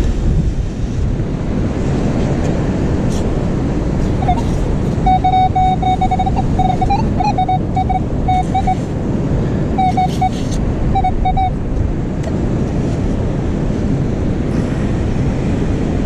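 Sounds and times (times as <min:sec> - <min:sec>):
wind buffeting microphone: 0:00.0 - 0:16.0
metal detector beeps: 0:04.2 - 0:08.9, 0:09.8 - 0:11.6.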